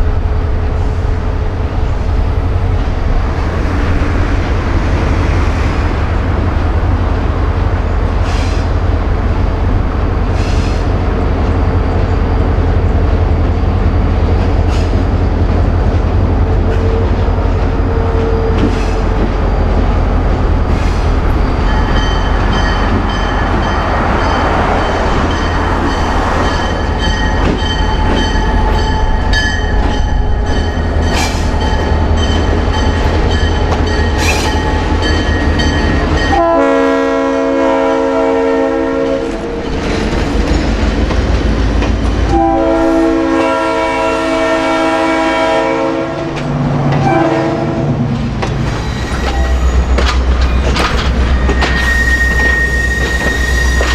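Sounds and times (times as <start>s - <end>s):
diesel locomotive rumbling: 0.0s - 53.9s
locomotive air horn blasts: 36.3s - 39.5s, 42.3s - 46.4s, 47.0s - 47.9s.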